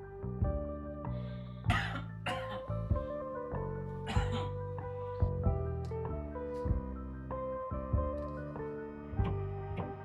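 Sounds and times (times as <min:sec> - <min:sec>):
person coughing: 0:01.7 - 0:02.7, 0:04.1 - 0:04.6.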